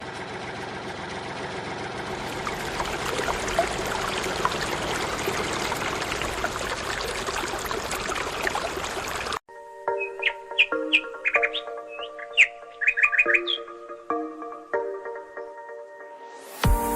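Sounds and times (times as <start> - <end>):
water gushing from pump outlet: 2.1 - 9.4.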